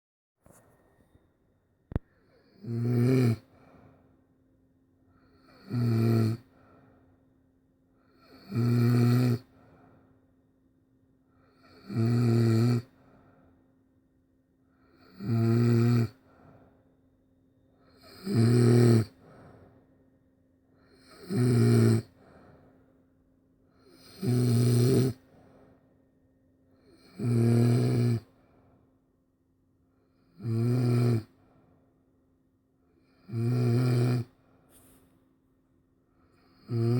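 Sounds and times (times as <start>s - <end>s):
quiet breathing: 0.5s - 5.7s, 6.3s - 8.5s, 9.2s - 11.9s, 12.7s - 15.2s, 16.0s - 18.2s, 18.9s - 27.4s, 28.1s - 30.4s, 31.2s - 36.9s
loud pitched snores: 2.4s - 3.5s, 5.4s - 6.4s, 8.2s - 9.5s, 11.6s - 12.9s, 14.9s - 16.2s, 18.0s - 19.2s, 20.9s - 22.1s, 23.8s - 25.2s, 26.9s - 28.3s, 30.4s - 31.3s, 33.2s - 34.3s, 36.4s - 36.9s.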